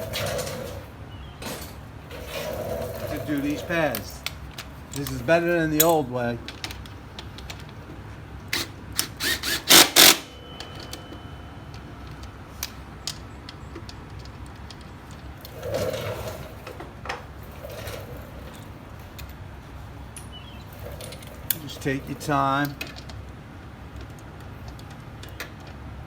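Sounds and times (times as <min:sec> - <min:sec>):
metal tools clinking and knocking: 0:00.0 - 0:07.8, 0:14.1 - 0:23.2.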